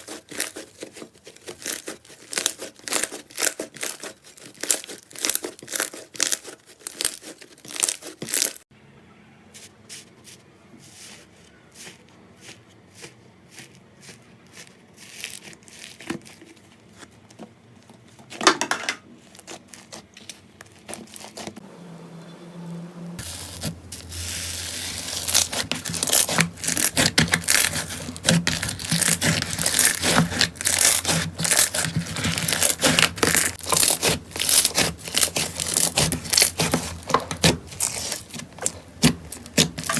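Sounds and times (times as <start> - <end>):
slime crackling and popping: 0.0 - 8.6, 19.2 - 21.6, 23.2 - 39.9.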